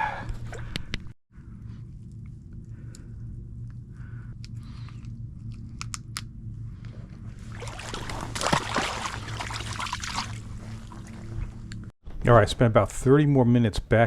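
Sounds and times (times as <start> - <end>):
steady low hum: 0.0 - 14.0
water splashing against kayak: 7.4 - 11.6.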